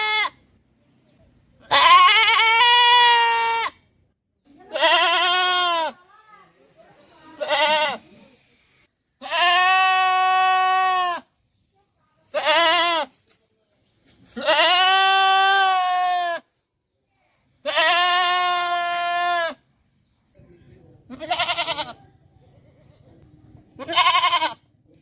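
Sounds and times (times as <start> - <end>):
goat bleating: 0.0 - 0.4, 1.6 - 3.8, 4.6 - 6.1, 7.2 - 8.0, 9.2 - 11.3, 12.3 - 13.2, 14.3 - 16.5, 17.6 - 19.6, 21.0 - 22.1, 23.7 - 24.7.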